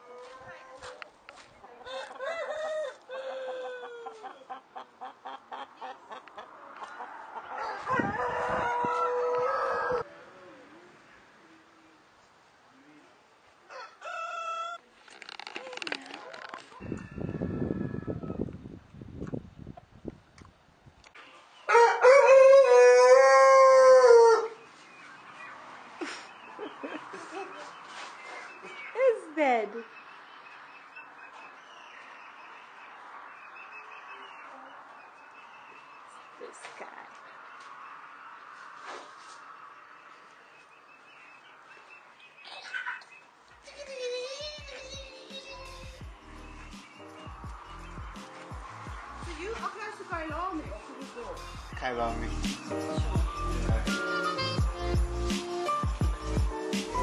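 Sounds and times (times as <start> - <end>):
rooster crowing: 1.8 - 4.3, 7.3 - 10.2, 13.7 - 14.8, 16.8 - 18.5, 21.7 - 24.6.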